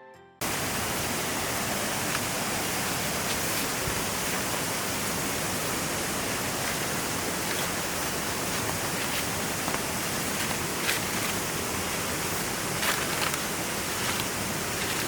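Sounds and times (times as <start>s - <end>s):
river water rushing: 0.4s - 15.0s.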